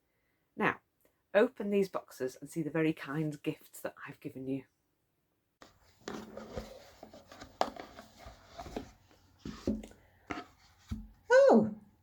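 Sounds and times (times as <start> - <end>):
packaging rustling and scraping: 5.7 - 11.2.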